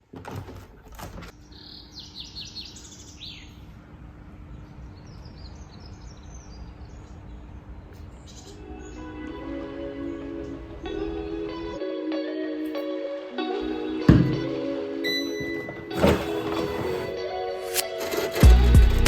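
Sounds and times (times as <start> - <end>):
songbirds chirping: 1.0 - 11.8
knocks: 14.1 - 14.4.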